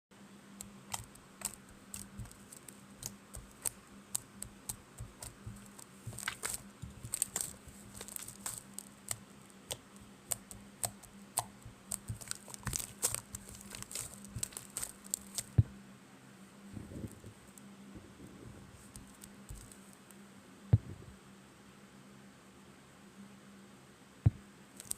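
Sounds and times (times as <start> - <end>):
slime squishing with sticky clicks: 0.6 - 15.7, 19.0 - 19.8.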